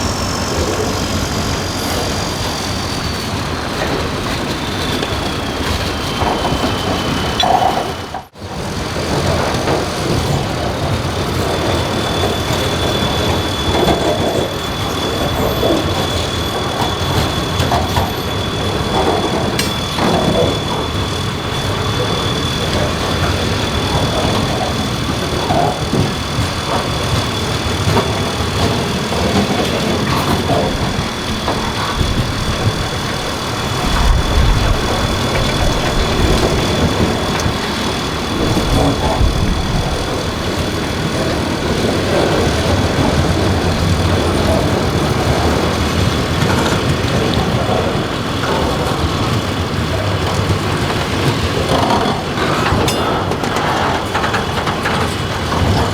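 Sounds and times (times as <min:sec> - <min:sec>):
faint high whine: 0:00.0 - 0:08.2
freight train rumbling: 0:00.0 - 0:55.9.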